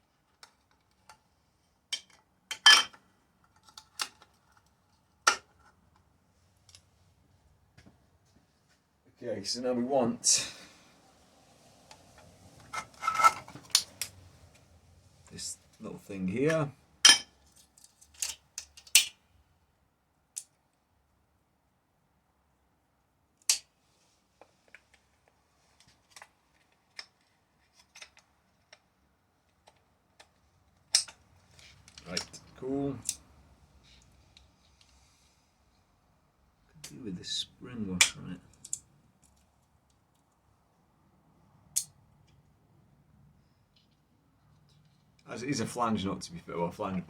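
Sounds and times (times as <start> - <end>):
clicks and knocks of small tools: 1.9 - 6.8, 17.1 - 19.2, 29.5 - 33.2, 38.0 - 40.3.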